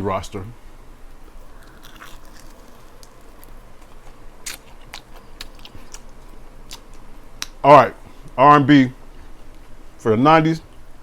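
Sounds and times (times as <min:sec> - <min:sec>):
chewing: 0:01.3 - 0:07.5.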